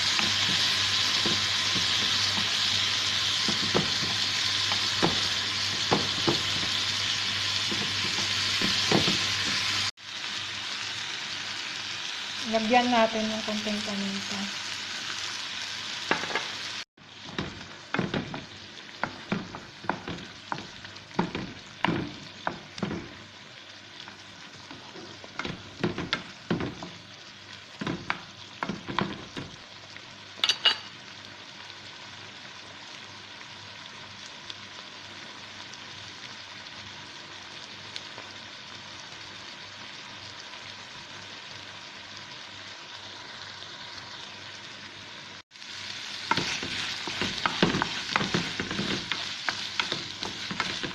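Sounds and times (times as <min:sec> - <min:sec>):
vegetables sizzling in a pan: 0:00.0 - 0:50.9.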